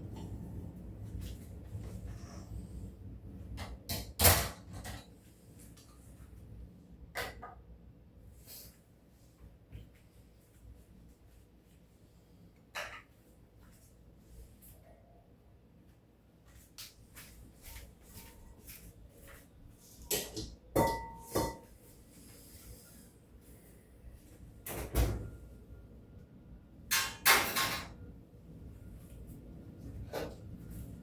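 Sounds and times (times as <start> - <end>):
kitchen things knocking and clattering: 20.0 - 21.7, 26.9 - 28.0.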